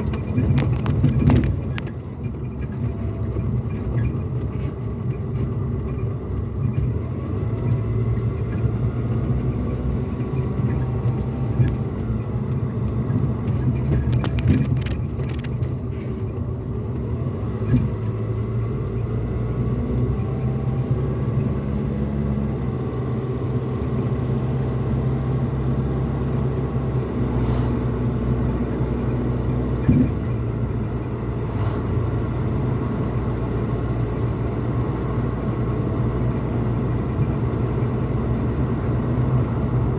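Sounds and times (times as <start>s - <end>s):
knocks from road bumps: 0.0s - 4.7s, 29.8s - 30.4s
truck engine and road rumble: 0.0s - 39.9s.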